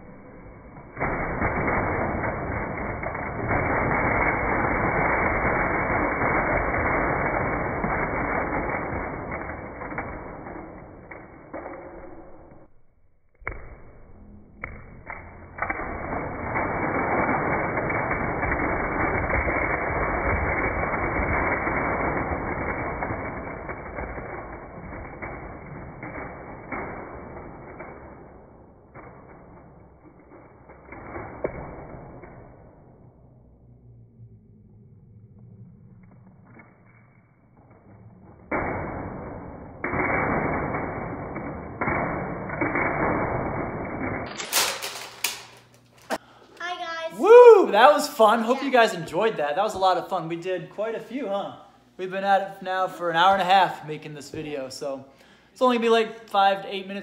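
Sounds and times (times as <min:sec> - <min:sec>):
slowed-down rushing clatter: 0:00.0 - 0:12.7, 0:13.6 - 0:44.4
toy car knocking into tiles: 0:44.4 - 0:45.6
plastic tiles clattering: 0:44.4 - 0:45.7.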